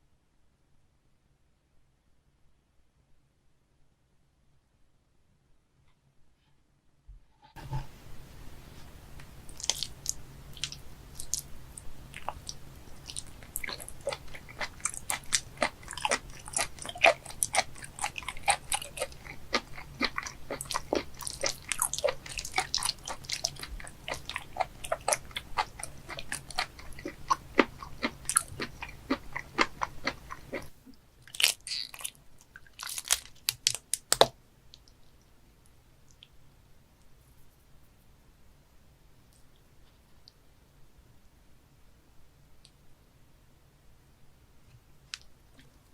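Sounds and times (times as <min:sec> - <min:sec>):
wet chewing and crunching: 0:09.4 - 0:35.0.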